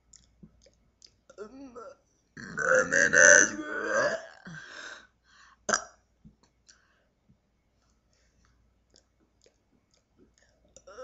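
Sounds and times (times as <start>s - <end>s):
woman burping: 1.3s - 4.7s, 5.7s - 6.0s
faint mouth clicks: 8.9s - 10.9s.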